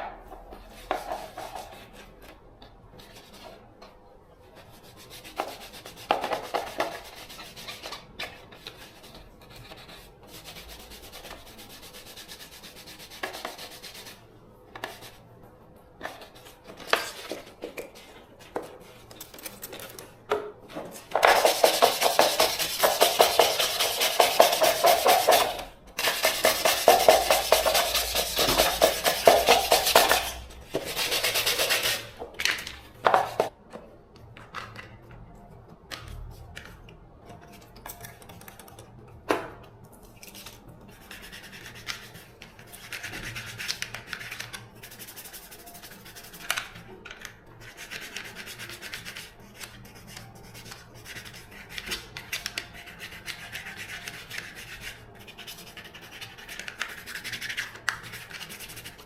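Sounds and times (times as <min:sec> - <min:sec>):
rubbing and scraping of parts: 0:20.7 - 0:33.5.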